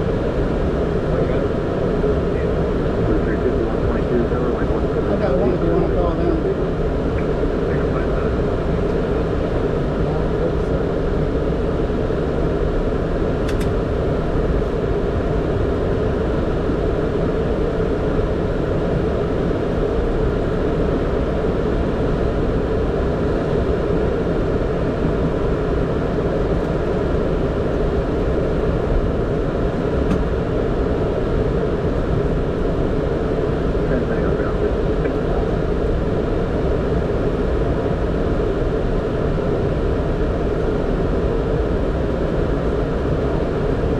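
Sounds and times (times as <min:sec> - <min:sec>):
aircraft engines rumbling: 0:00.0 - 0:43.9
hum: 0:00.0 - 0:43.9.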